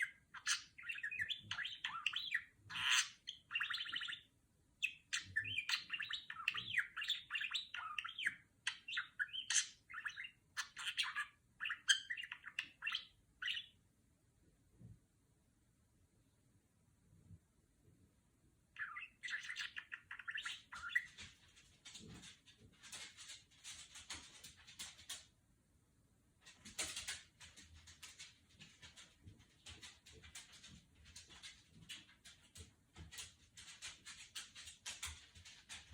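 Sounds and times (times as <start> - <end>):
budgerigar chattering: 0.0 - 4.2
budgerigar chirping: 0.0 - 13.8, 18.8 - 21.2.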